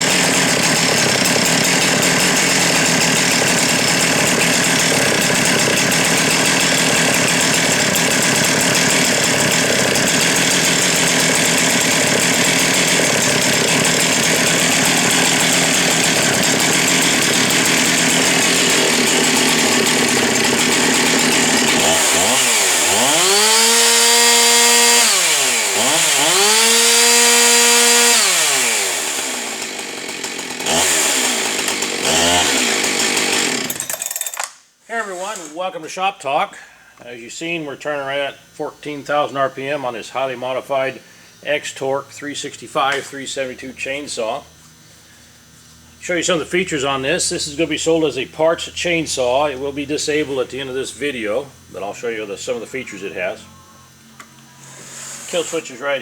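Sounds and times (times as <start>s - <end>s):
chainsaw revving under load: 0.0s - 34.5s, 45.9s - 56.0s
chain cutting: 30.7s - 34.6s.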